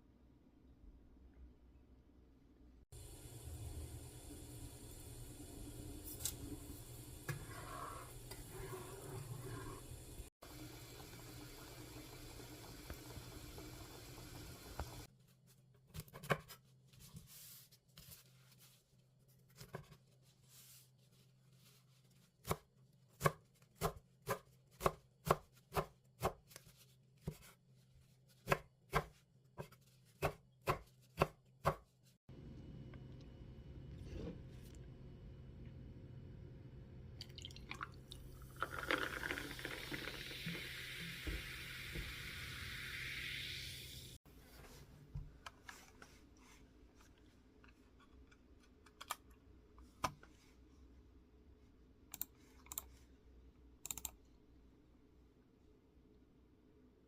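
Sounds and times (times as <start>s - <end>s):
cooking hiss: 3.0s - 15.1s, 38.4s - 44.2s.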